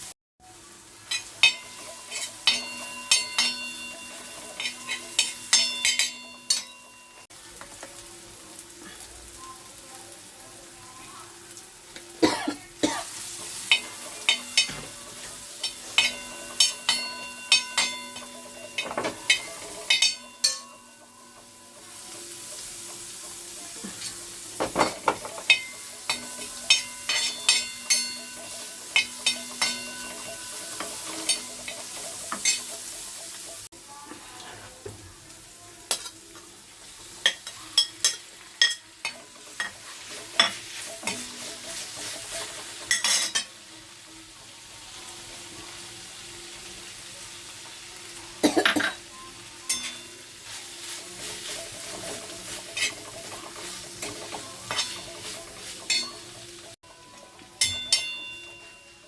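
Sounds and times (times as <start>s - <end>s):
food sizzling in a pan: 0.0s - 59.0s
utensil clinking and scraping pan: 1.1s - 7.3s, 13.5s - 21.8s, 23.9s - 32.8s, 49.7s - 56.4s.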